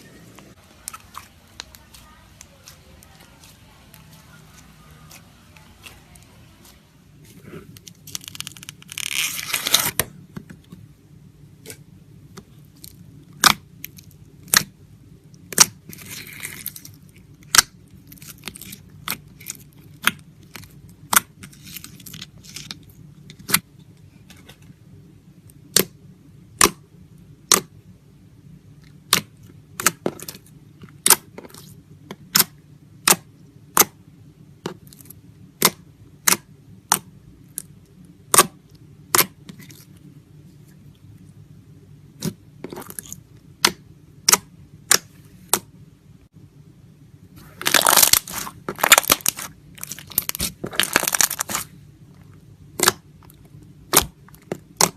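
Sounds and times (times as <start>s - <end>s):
low hum: 0.0s - 13.3s
rustling tearing noise: 0.7s - 10.0s, 47.4s - 51.8s.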